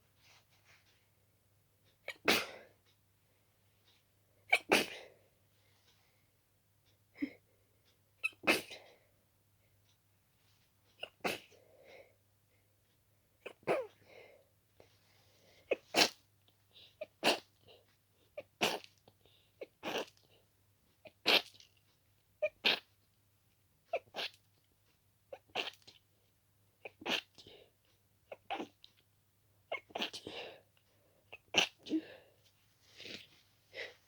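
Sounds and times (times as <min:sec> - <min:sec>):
person sneezing: 0:02.1 - 0:02.7, 0:04.5 - 0:05.1, 0:08.4 - 0:08.8.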